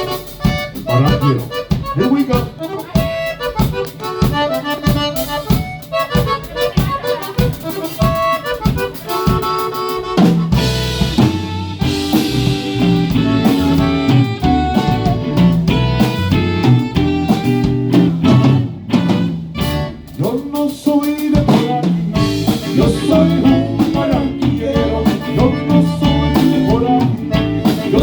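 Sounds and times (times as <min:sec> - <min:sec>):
bass notes: 0:00.0 - 0:20.4, 0:21.3 - 0:28.0
accordion melody: 0:00.0 - 0:28.0
drum kit beat: 0:00.0 - 0:28.0.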